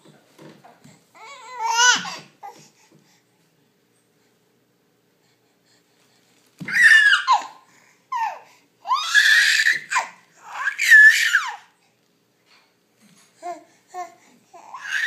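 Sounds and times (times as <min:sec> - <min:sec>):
baby squealing happily: 0:06.7 - 0:11.7, 0:14.7 - 0:15.0.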